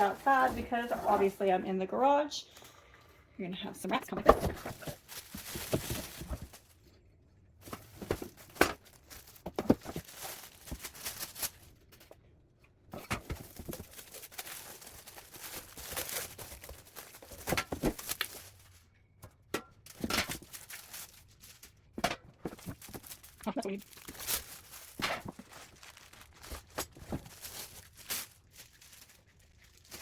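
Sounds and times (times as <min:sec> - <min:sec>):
packaging tearing and crinkling: 0:04.7 - 0:06.7, 0:07.7 - 0:11.9, 0:13.1 - 0:18.7, 0:19.9 - 0:21.9, 0:22.5 - 0:30.0.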